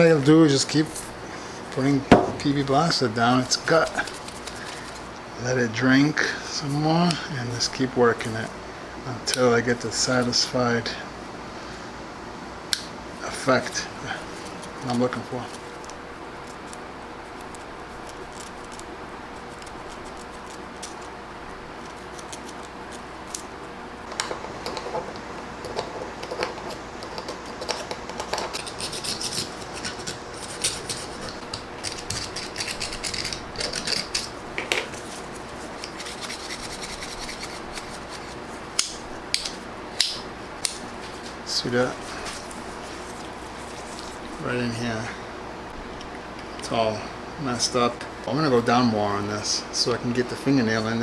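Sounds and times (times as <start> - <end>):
steady hum: 0.0 - 51.0.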